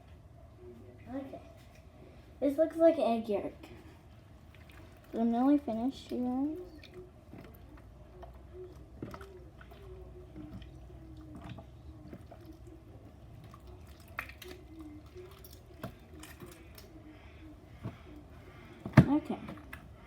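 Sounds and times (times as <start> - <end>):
slime squelching by hand: 4.1 - 20.0.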